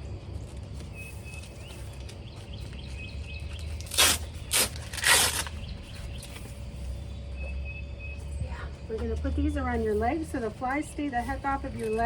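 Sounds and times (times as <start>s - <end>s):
velcro straps ripping open: 3.8s - 5.6s.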